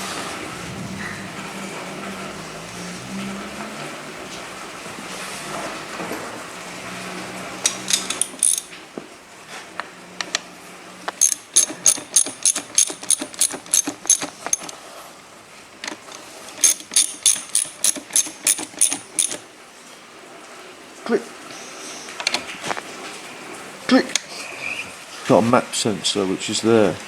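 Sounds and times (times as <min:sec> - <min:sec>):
socket ratchet wrench clicking: 0:07.6 - 0:08.7, 0:11.1 - 0:14.8, 0:15.9 - 0:19.4.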